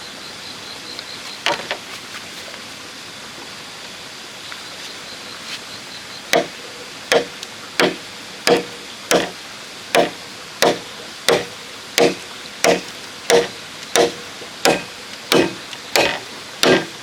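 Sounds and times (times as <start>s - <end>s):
chopping strikes into bamboo: 6.3s - 6.5s, 7.1s - 16.9s.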